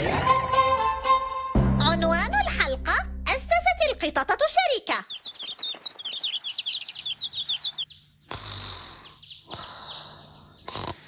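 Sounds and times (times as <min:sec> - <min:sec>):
small birds chirping: 0:03.3 - 0:11.0.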